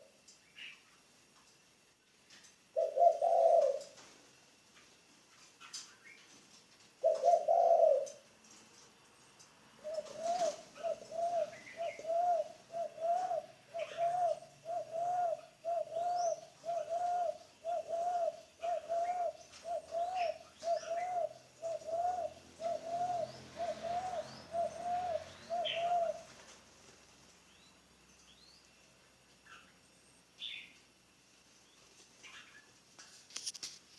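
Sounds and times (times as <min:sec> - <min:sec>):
dove cooing: 0:02.7 - 0:04.2, 0:07.0 - 0:08.3, 0:09.7 - 0:26.6
small birds chirping: 0:09.8 - 0:26.6, 0:27.3 - 0:32.9.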